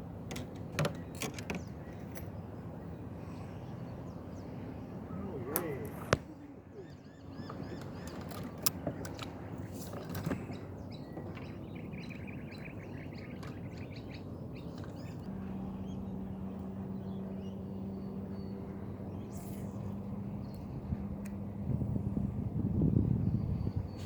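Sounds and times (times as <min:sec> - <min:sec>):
boat engine hum: 0:00.0 - 0:24.0
small birds chirping: 0:01.0 - 0:21.0.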